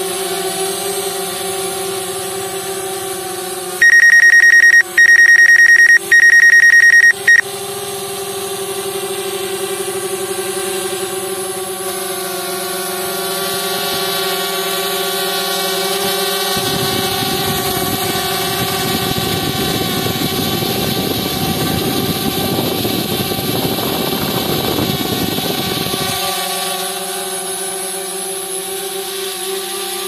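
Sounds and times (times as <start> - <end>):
electronic warning beeps: 3.8 - 7.4.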